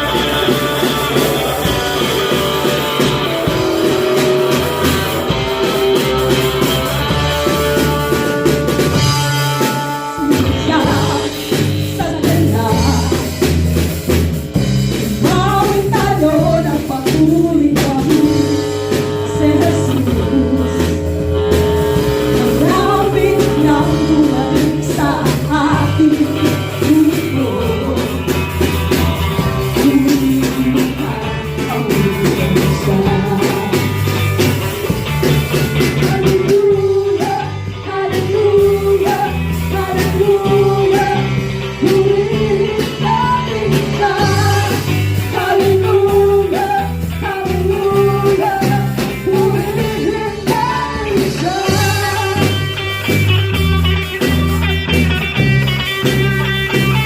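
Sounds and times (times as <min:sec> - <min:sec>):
live rock band playing: 0:00.0 - 0:57.0
person singing: 0:07.4 - 0:13.5, 0:15.1 - 0:21.4, 0:22.2 - 0:34.2, 0:35.8 - 0:53.1.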